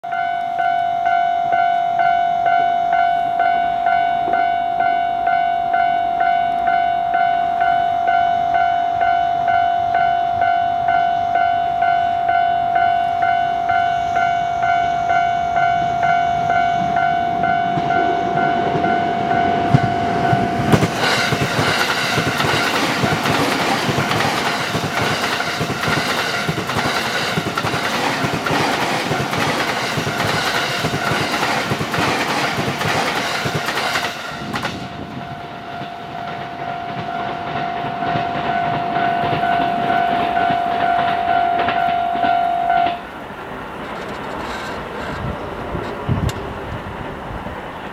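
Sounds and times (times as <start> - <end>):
train rushing past: 0.1 - 47.9
wheels clattering over rail joints: 15.8 - 47.9
level crossing bell ringing: 36.3 - 43.0.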